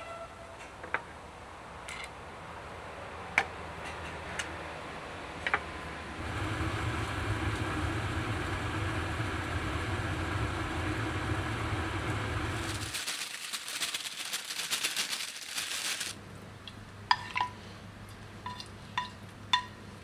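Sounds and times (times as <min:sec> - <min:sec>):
vehicle engine humming: 0:06.2 - 0:16.2.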